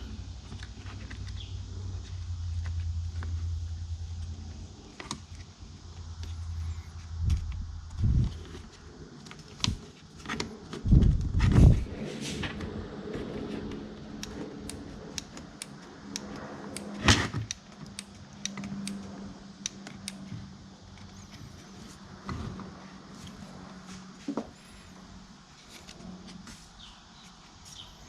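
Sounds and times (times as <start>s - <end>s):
small handling clicks: 13.7s - 20.3s.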